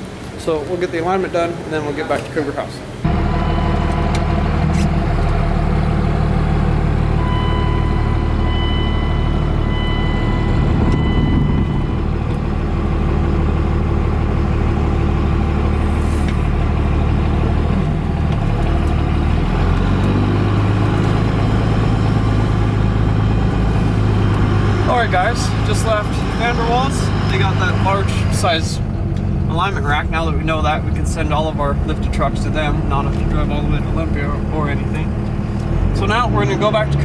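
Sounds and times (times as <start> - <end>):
truck engine drone: 3.0 - 37.0
high electronic beeping: 7.2 - 12.3.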